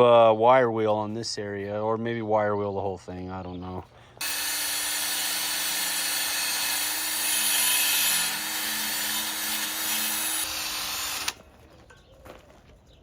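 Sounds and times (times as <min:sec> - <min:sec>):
wire wheel scraping metal: 0:04.2 - 0:11.4.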